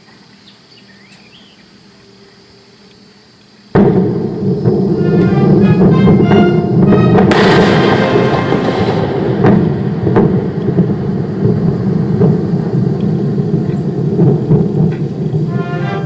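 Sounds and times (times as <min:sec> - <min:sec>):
heavy continuous rumble: 0:01.7 - 0:16.0
explosion with hissing trail: 0:03.7 - 0:16.0
sharp cracks: 0:03.8 - 0:16.0.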